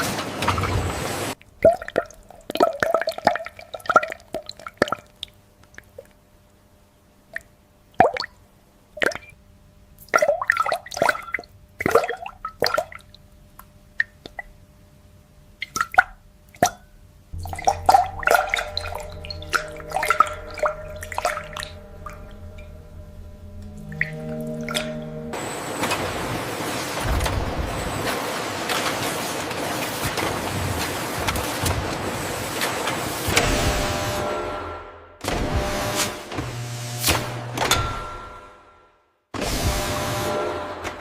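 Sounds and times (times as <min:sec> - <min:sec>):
liquid dripping: 0:01.4 - 0:06.2, 0:09.0 - 0:09.4, 0:10.0 - 0:14.6, 0:15.6 - 0:25.2
steady low hum: 0:16.2 - 0:29.0.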